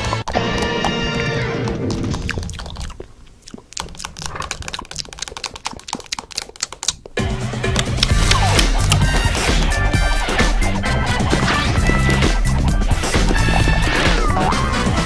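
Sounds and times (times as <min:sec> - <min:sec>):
quick irregular clicks: 0:01.7 - 0:14.4
ident music: 0:07.2 - 0:15.0
loud music: 0:07.2 - 0:15.0.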